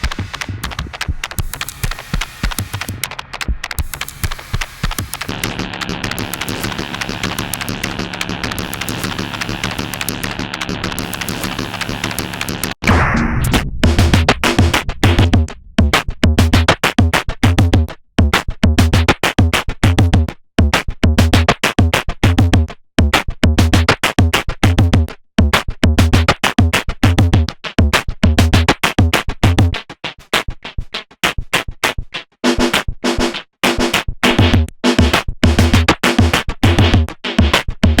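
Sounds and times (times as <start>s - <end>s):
clicky percussion: 0.0s - 19.3s
short pitched synth hits: 5.3s - 16.5s
deep kick drums: 12.8s - 19.1s.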